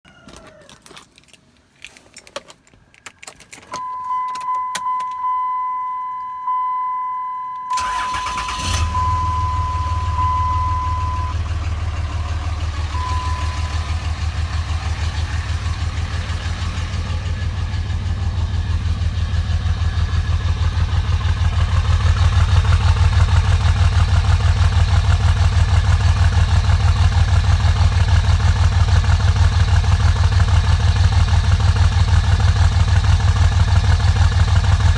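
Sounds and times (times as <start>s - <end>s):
dashboard chime beeping: 3.8s - 7.9s, 12.9s - 14.2s
engine cranking and idling: 7.7s - 34.9s.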